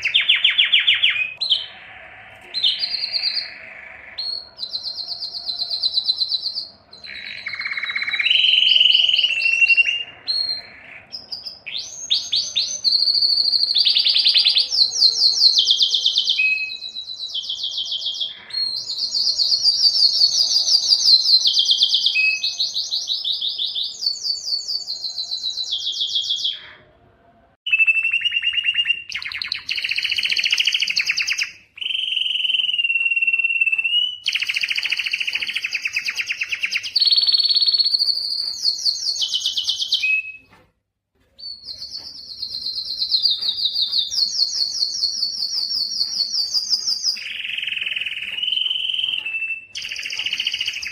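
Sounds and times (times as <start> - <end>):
canary singing rapid trills: 0.0 - 26.8, 27.7 - 40.4.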